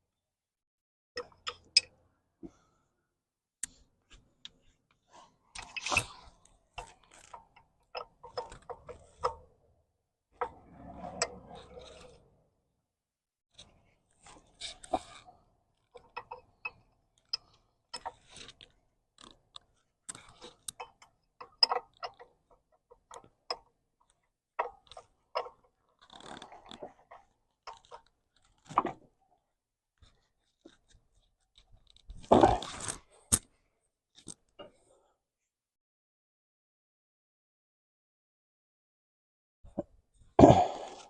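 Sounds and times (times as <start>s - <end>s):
wrench clicking and scraping: 5.6s - 9.5s, 14.3s - 15.3s, 16.0s - 23.7s.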